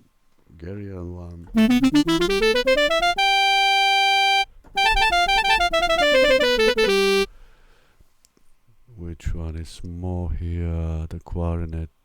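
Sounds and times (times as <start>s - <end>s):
sampled clarinet notes: 1.6s - 7.3s.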